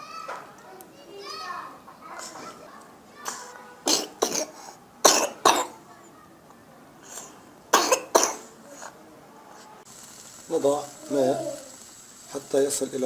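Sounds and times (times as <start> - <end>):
child coughing: 3.2 - 6.0, 7.1 - 9.0.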